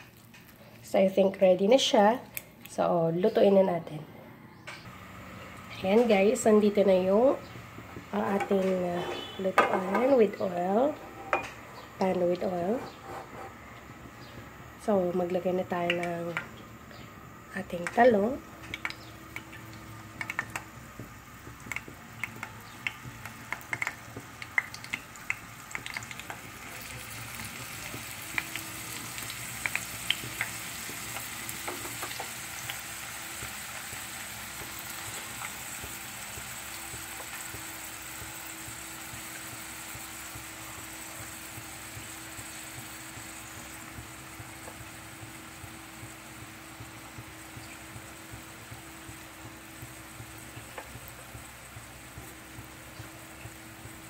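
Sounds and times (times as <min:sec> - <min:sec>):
food frying in hot oil: 0:13.9 - 0:54.0
oil clicks and pops: 0:18.6 - 0:26.4.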